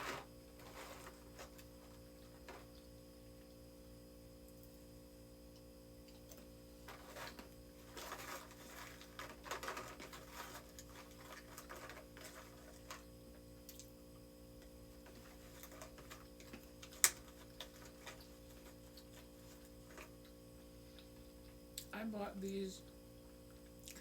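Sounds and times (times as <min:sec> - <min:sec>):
steady low hum: 0:00.0 - 0:24.0
small objects clicking and rustling: 0:06.2 - 0:13.1, 0:15.0 - 0:20.3.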